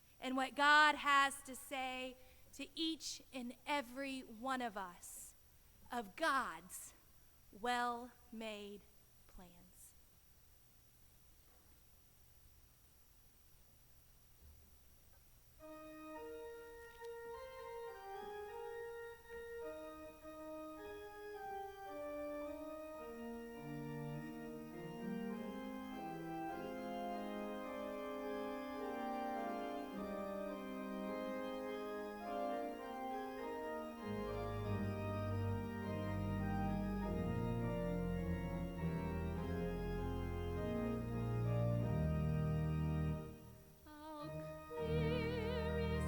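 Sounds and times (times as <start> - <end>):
organ playing slow chords: 15.6 - 46.0.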